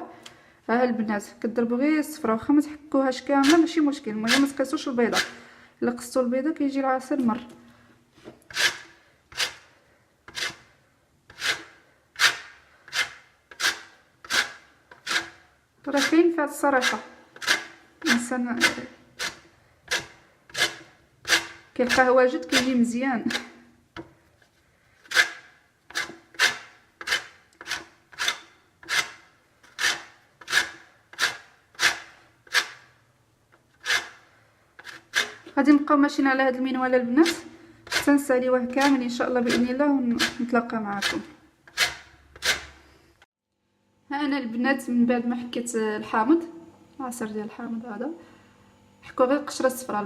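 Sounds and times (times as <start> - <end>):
lemon scraped on metal grater: 3.3 - 5.4, 8.4 - 23.6, 25.0 - 33.0, 33.7 - 35.7, 37.0 - 42.8.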